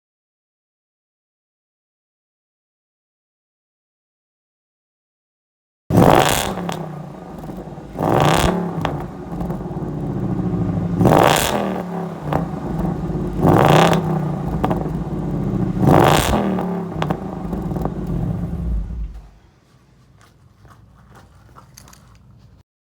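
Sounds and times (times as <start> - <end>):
car engine revving: 5.9 - 19.4.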